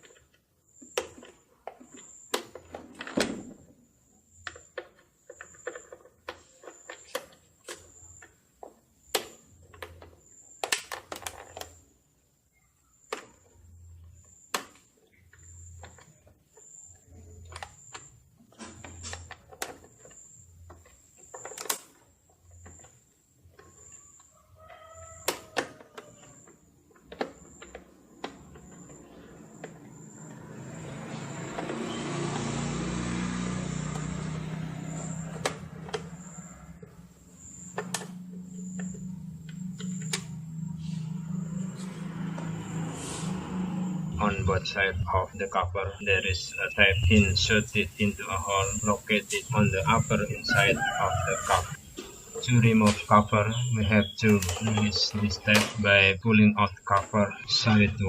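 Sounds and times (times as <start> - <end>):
hand tools and plastic clicking: 0.0 - 3.6, 4.3 - 11.9, 13.0 - 44.4, 46.3 - 55.9
insect chirping: 11.7 - 58.0
rooster crowing: 24.3 - 26.4, 34.0 - 37.2, 48.6 - 52.0
passing vehicle engine: 28.3 - 51.8.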